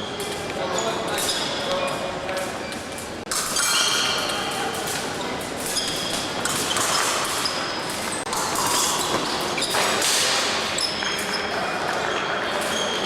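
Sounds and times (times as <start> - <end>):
shoe squeaks: 0.0 - 2.9, 5.2 - 8.2, 8.8 - 13.0
sports hall din: 0.0 - 13.0.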